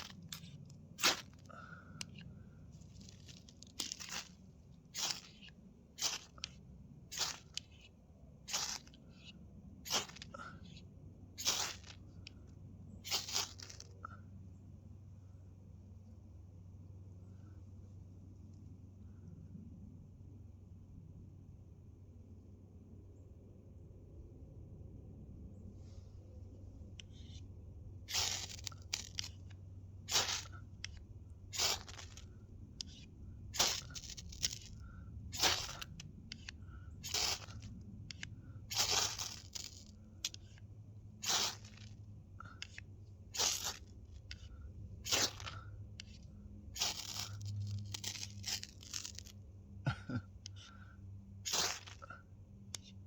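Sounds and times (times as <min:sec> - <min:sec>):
knife blade scraping: 0:00.0 - 0:02.3, 0:03.0 - 0:07.9, 0:08.5 - 0:12.0, 0:13.0 - 0:13.9, 0:28.1 - 0:40.6, 0:41.2 - 0:46.2, 0:46.8 - 0:49.4, 0:51.4 - 0:52.1
steady low hum: 0:00.0 - 0:53.0.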